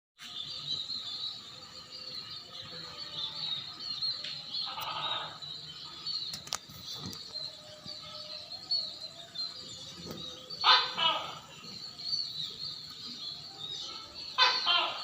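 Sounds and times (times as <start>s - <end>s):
louder lower bird call: 4.5s - 5.6s, 10.6s - 11.7s, 14.3s - 15.0s.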